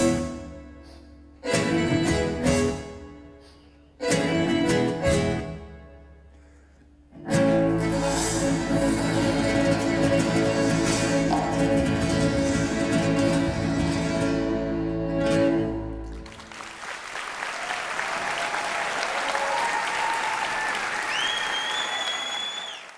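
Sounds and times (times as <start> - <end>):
audience applause: 16.1 - 22.9.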